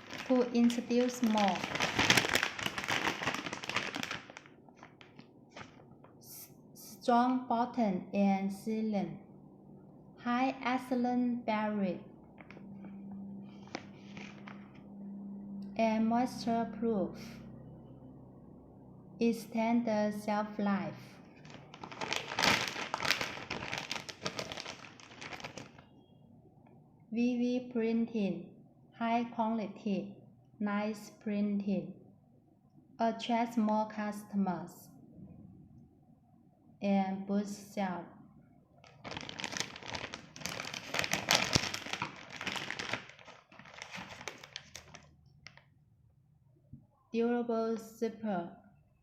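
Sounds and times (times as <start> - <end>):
foil pouch crinkling: 0.0 - 5.8, 13.6 - 14.6, 21.4 - 25.8, 38.8 - 45.6.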